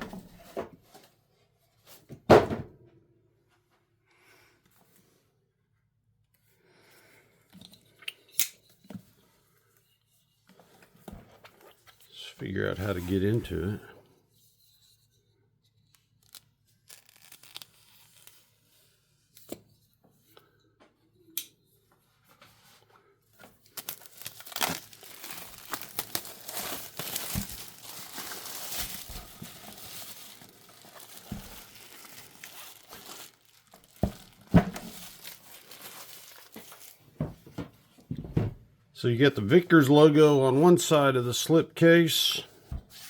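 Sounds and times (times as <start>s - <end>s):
wrapping tearing and crinkling: 16.0s - 18.6s, 23.5s - 37.0s.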